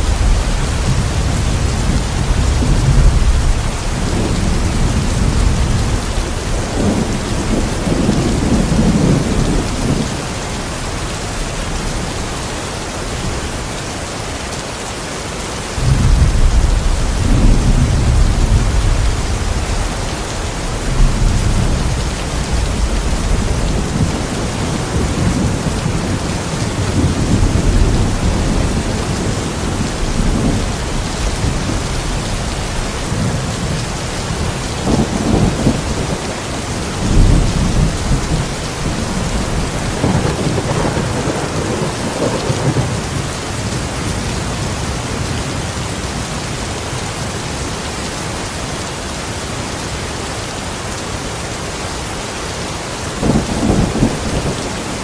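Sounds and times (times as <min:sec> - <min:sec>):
low rolls of thunder: 0:00.0 - 0:10.3, 0:15.8 - 0:44.2, 0:53.2 - 0:55.0
steady rain falling: 0:00.0 - 0:55.0.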